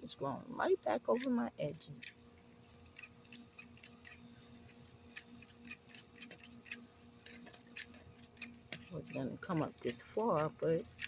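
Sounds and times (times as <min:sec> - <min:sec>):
faint steady hum: 0:00.0 - 0:11.0
scissors snipping grass: 0:05.0 - 0:11.0.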